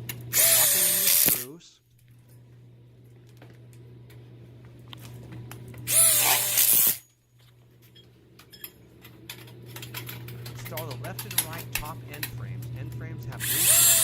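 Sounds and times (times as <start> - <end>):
steady low hum: 0.0 - 14.0
impact drill driving screw: 0.3 - 1.5, 5.9 - 7.0, 13.4 - 14.0.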